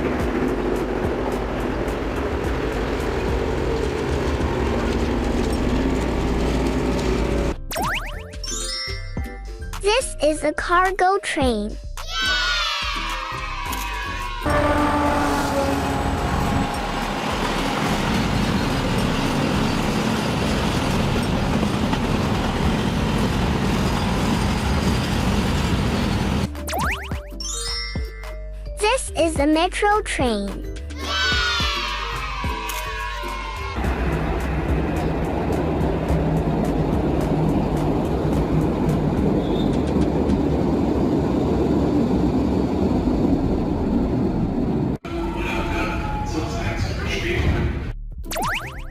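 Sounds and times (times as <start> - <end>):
train wheels rumbling on rails: 0.0 - 7.6, 14.4 - 26.5, 33.8 - 47.7
train horn: 14.4 - 18.2, 45.0 - 46.7.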